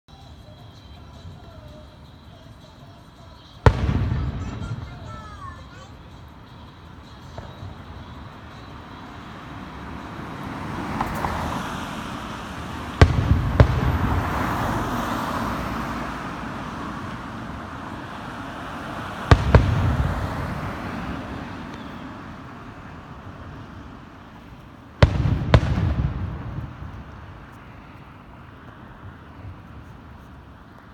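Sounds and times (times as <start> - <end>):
firework crackle and hiss: 0.2 - 30.9
firework shells bursting: 12.5 - 15.1, 19.2 - 22.2, 25.0 - 27.6.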